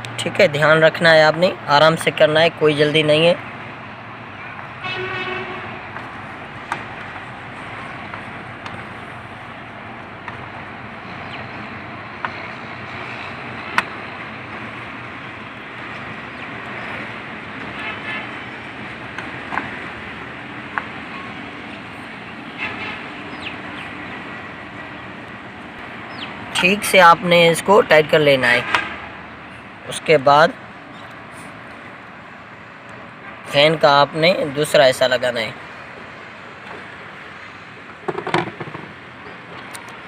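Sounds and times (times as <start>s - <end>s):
steady background noise: 0.0s - 40.0s.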